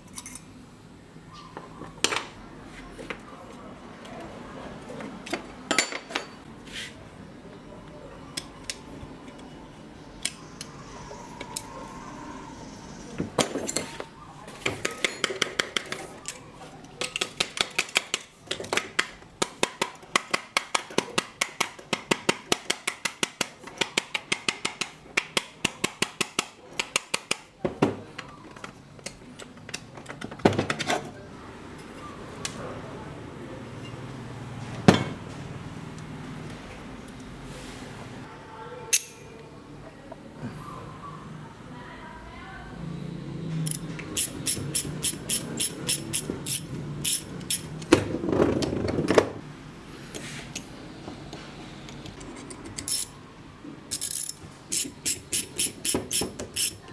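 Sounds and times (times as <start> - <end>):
metal tools clinking: 0.0 - 0.5.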